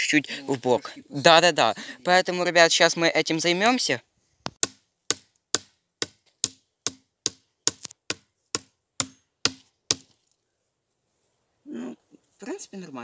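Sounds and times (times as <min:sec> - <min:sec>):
shovel blade chopping ground: 0:04.6 - 0:10.1.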